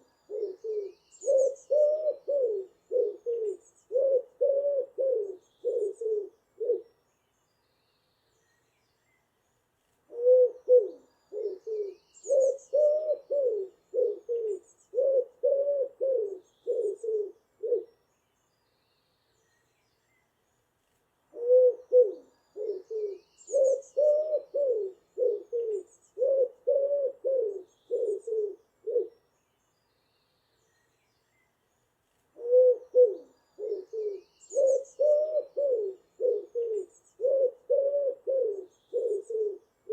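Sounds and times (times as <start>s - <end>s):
faint high bird chirps: 0.0s - 4.2s, 10.2s - 15.3s, 21.4s - 26.5s, 27.4s - 37.6s, 38.4s - 39.9s
pigeon cooing: 0.0s - 6.9s, 10.1s - 17.9s, 21.3s - 29.1s, 32.4s - 39.9s.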